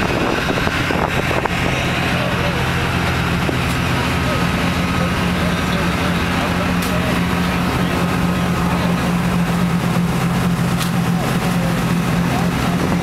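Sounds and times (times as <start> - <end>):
wind rushing: 0.0 - 2.1
boat engine running: 0.0 - 13.0
water noise: 0.0 - 13.0.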